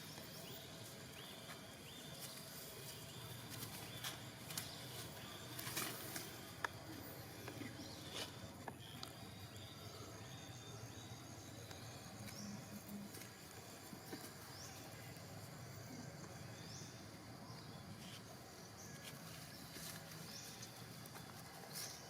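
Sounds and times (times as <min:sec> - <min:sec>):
insects droning: 0:00.0 - 0:22.0.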